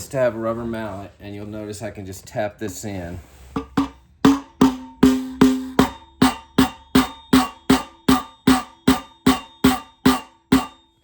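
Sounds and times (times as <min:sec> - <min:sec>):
rubber mallet knocking: 0:03.6 - 0:10.8.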